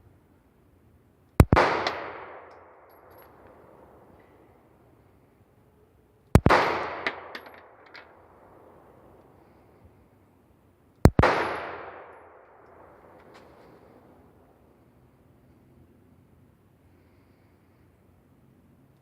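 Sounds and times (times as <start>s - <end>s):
gunshots with echo: 1.4s - 3.4s, 6.4s - 7.9s, 11.1s - 13.1s.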